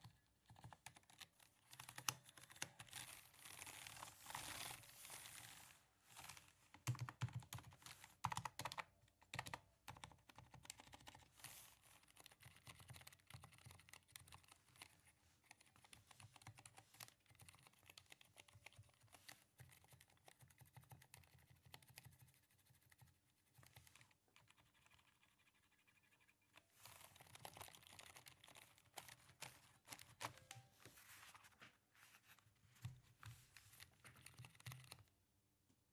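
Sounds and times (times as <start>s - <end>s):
quiet keyboard typing: 0.0s - 4.7s, 6.2s - 31.6s, 32.8s - 35.2s.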